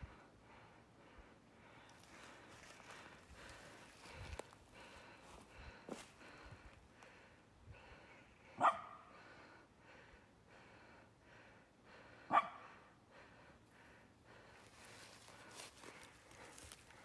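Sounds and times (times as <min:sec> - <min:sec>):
dog barking: 0:08.6 - 0:09.1, 0:12.3 - 0:12.7.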